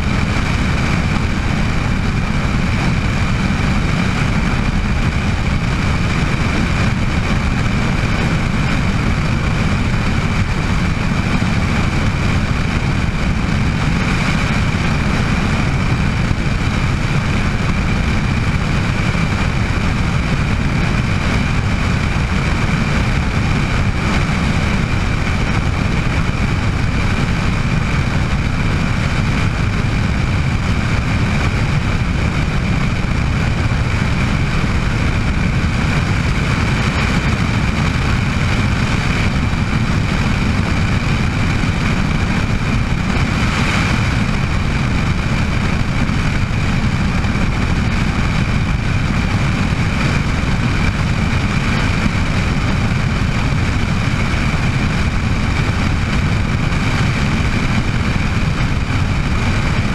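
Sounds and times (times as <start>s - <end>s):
helicopter engine and rotor: 0.0s - 59.9s
high turbine whine: 0.0s - 59.9s.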